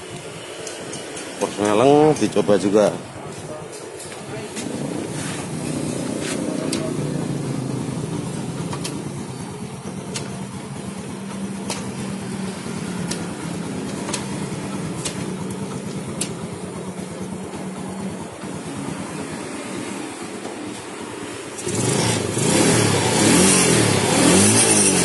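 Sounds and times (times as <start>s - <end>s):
motorcycle engine running: 1.6s - 25.0s
sharp clicks: 8.6s - 9.0s, 10.1s - 10.4s, 11.3s - 12.0s, 13.0s - 16.4s.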